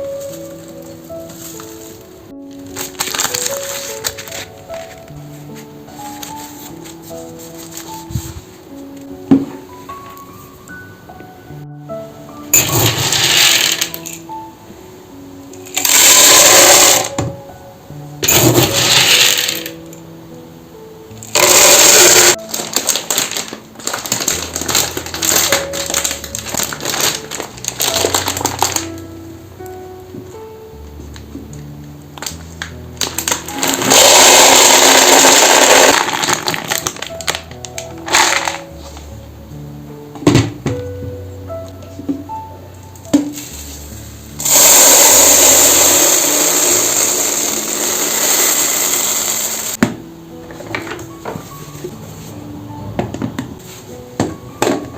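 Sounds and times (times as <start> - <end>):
soft background music: 0.0 - 54.9
items clicking and rattling: 21.4 - 28.9.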